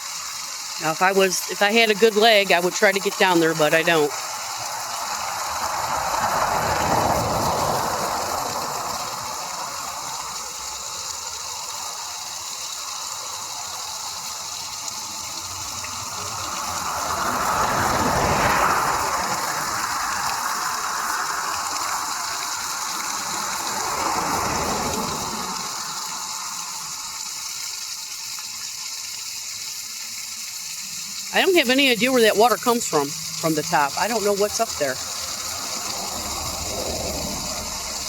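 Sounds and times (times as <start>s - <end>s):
waterfall rushing: 0.8s - 28.6s, 31.2s - 38.0s
passing vehicle: 2.4s - 27.5s, 32.8s - 38.0s.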